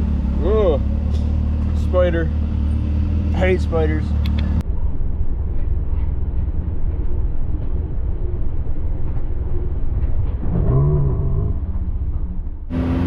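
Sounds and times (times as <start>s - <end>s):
utv engine idling: 0.0s - 4.6s.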